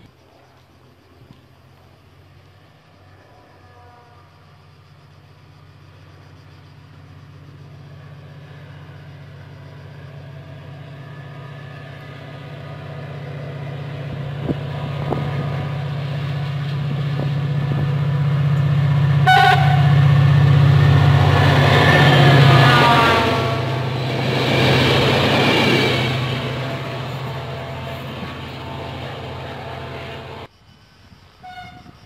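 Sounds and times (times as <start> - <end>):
diesel train engine drone: 4.2 - 30.5
train horn blast: 18.9 - 30.5, 31.4 - 31.9.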